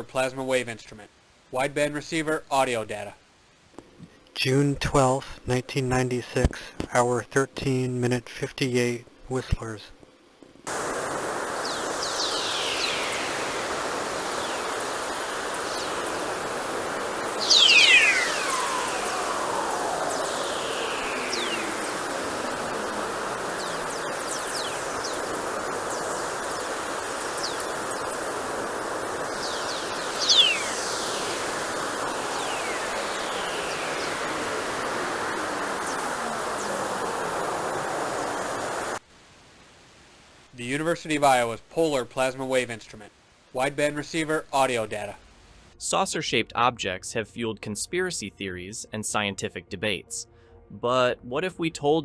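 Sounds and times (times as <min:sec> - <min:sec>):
steady hiss: 0:00.0 - 0:48.2
falling whistling tones: 0:17.2 - 0:25.3, 0:29.4 - 0:37.0.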